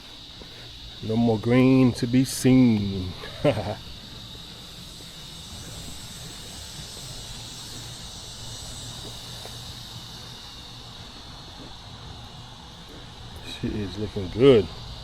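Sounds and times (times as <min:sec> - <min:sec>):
insect trilling: 0:00.0 - 0:15.0.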